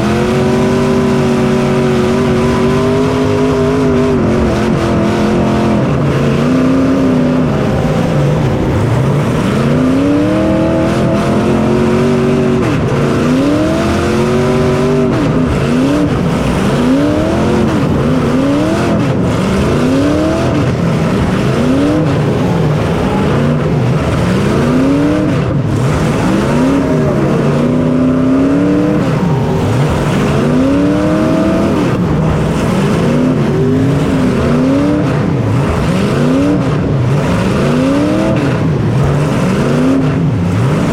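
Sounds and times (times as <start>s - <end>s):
racing engine revving: 0.0s - 40.9s
wind and track noise: 0.0s - 40.9s.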